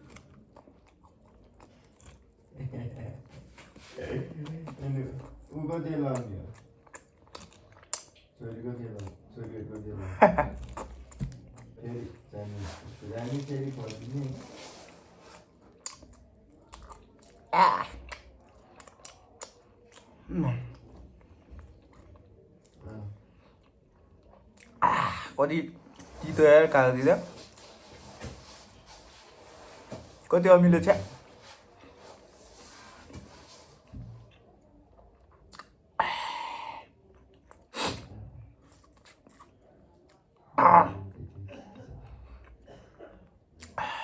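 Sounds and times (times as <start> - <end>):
chewing mouth clicks: 0.0 - 2.5, 4.4 - 9.8, 15.3 - 20.1
person chewing: 0.0 - 2.6, 3.4 - 30.3, 31.3 - 36.0, 37.0 - 40.5, 43.6 - 43.8.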